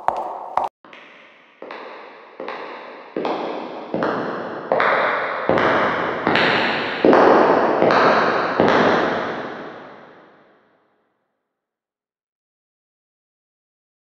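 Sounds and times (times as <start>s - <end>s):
footsteps on hard surface: 0.0s - 0.7s.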